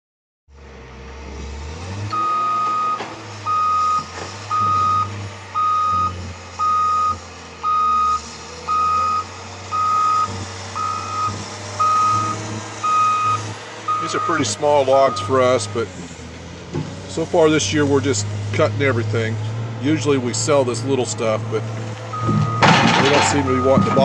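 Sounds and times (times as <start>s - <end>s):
engine low rumble: 0.5s - 24.0s
backup alarm beeping: 2.1s - 14.5s, 15.1s - 15.3s, 22.1s - 22.9s, 23.5s - 24.0s.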